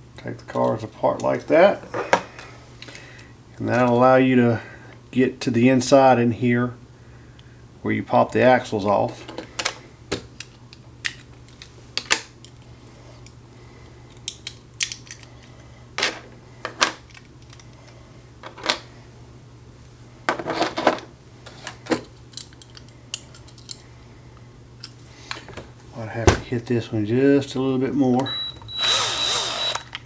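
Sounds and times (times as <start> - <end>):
faint steady hum: 0.0 - 30.0
toy car parts clicking and clattering: 14.1 - 15.3, 20.3 - 23.8.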